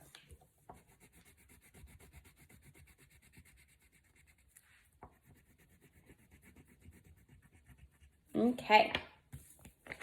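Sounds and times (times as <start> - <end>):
crayon scratching on paper: 0.8 - 8.3.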